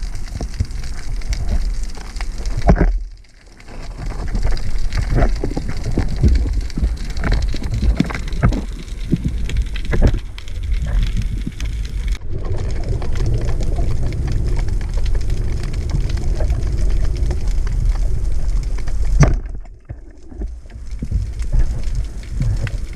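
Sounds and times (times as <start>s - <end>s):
crackling and clicks: 0.0s - 22.9s
underwater rumble of moving water: 0.0s - 22.9s.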